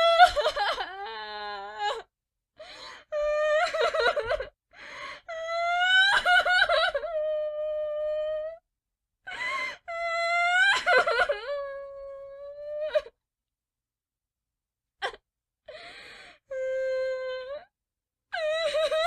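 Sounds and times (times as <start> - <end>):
gasping breath: 4.7 - 5.3, 15.7 - 16.5.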